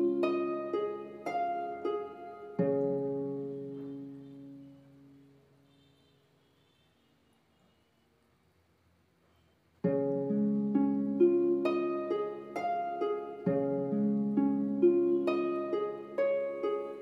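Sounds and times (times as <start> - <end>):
plucked string instrumental music: 0.0 - 5.4, 9.8 - 17.0.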